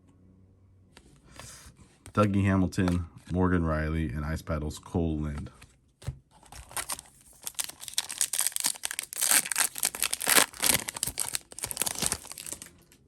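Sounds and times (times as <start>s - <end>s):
wrapper tearing and crinkling: 6.5s - 12.7s.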